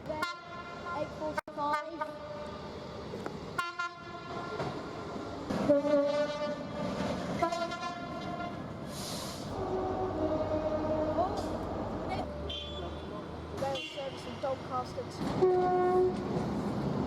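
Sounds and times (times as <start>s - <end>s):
two-tone train horn: 3.6s - 4.7s, 5.6s - 6.8s, 7.4s - 8.6s, 9.5s - 13.0s, 15.3s - 16.3s
short hiss: 8.8s - 9.6s.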